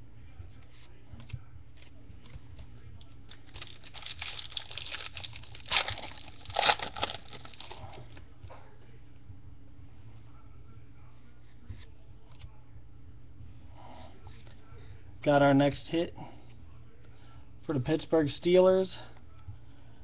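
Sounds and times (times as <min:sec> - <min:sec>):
foil wrapper crinkling: 0:03.3 - 0:07.8.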